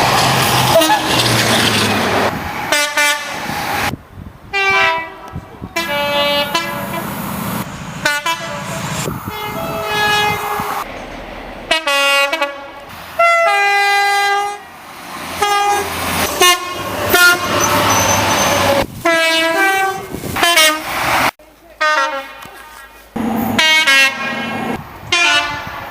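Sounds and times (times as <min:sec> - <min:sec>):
running train: 0:00.0 - 0:25.9
two-tone train horn blasts: 0:04.5 - 0:07.1, 0:08.0 - 0:10.8, 0:11.7 - 0:14.6, 0:15.4 - 0:20.8, 0:23.2 - 0:25.8.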